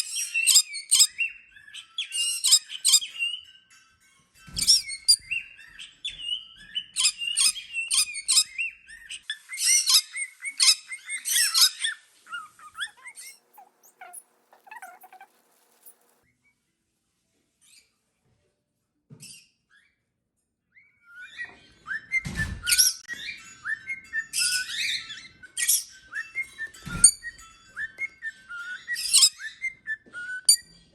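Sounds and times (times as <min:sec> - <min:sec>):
parrot chirps and squeaks: 0:00.0 - 0:16.4, 0:19.2 - 0:20.0, 0:20.8 - 0:30.9
parrot squawking: 0:09.4 - 0:16.2.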